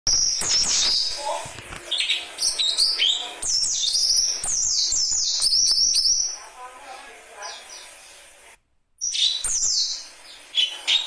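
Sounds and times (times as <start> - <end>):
songbird chirping and whistling: 0.1 - 6.5, 9.0 - 11.0.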